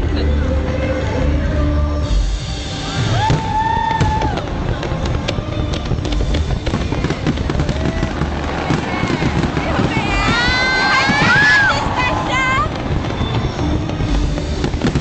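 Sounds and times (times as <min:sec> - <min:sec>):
fireworks crackling and banging: 0:01.9 - 0:15.0.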